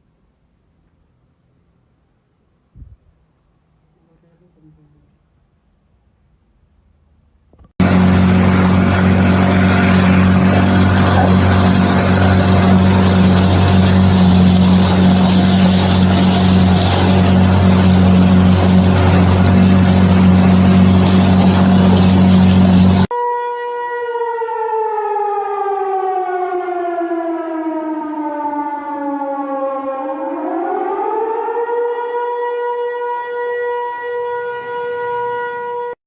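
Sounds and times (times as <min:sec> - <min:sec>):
loud steady rumble: 0:07.8 - 0:23.1
warning siren: 0:07.8 - 0:36.0.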